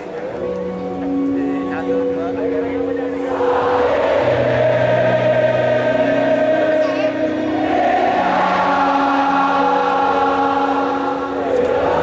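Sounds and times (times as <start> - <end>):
crowd singing together: 3.2 - 12.0.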